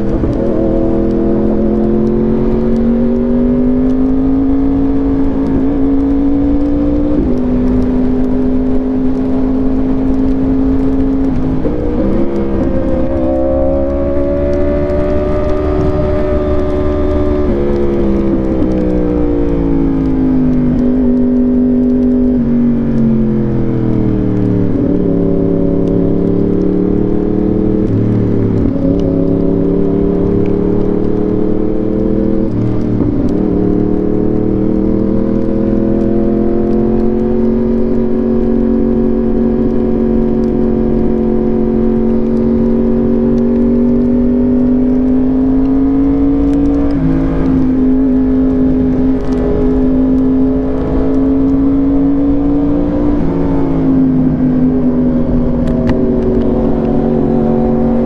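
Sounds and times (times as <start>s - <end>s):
wind rush: 0.0s - 3.6s, 4.4s - 38.2s, 45.6s - 58.0s
motorcycle engine at speed: 0.0s - 58.0s.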